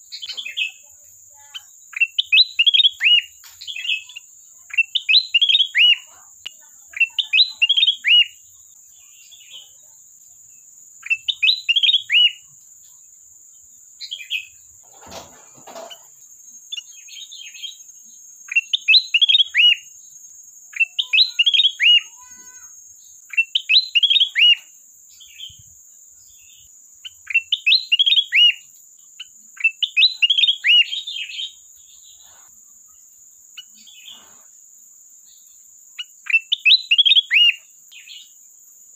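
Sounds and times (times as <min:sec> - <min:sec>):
brief rustle: 0:14.8 - 0:16.0.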